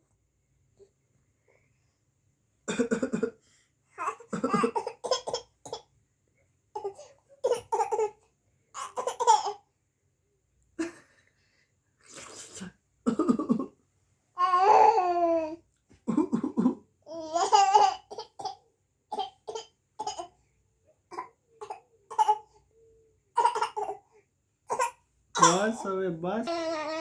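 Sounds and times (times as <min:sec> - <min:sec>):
child pretend-coughing: 0:04.0 - 0:05.9, 0:16.1 - 0:20.3, 0:21.1 - 0:22.6, 0:23.4 - 0:24.0, 0:24.7 - 0:25.9.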